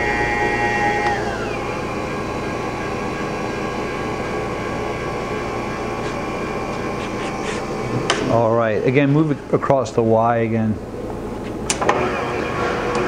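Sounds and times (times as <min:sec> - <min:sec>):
milling machine humming: 0:00.0 - 0:13.0.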